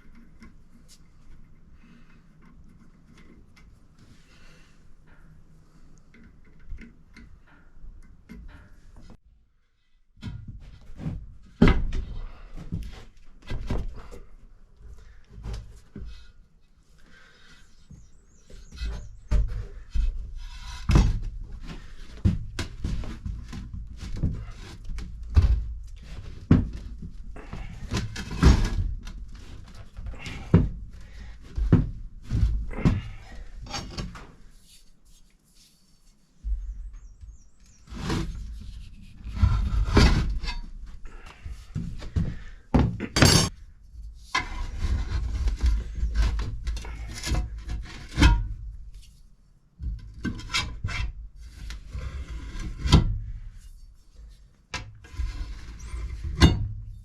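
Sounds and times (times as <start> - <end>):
scraping: 17.1 - 49.2.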